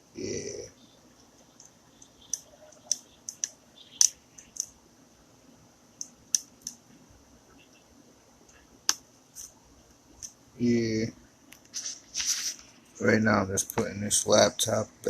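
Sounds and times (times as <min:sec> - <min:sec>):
laptop parts clicking and tapping: 0:01.6 - 0:04.7.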